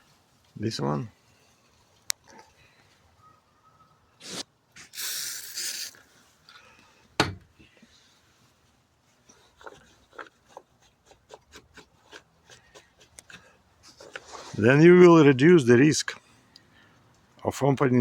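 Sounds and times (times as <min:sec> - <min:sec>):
spray cleaner hissing: 0:04.3 - 0:06.0.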